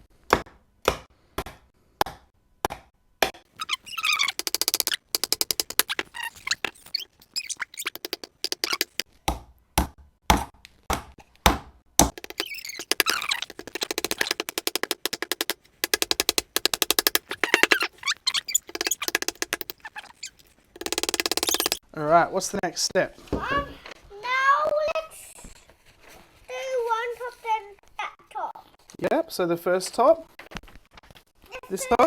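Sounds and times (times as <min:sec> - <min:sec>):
rapid clicking and tapping: 0:03.6 - 0:09.0, 0:12.0 - 0:21.8
hammer driving nails into wood: 0:08.4 - 0:17.9.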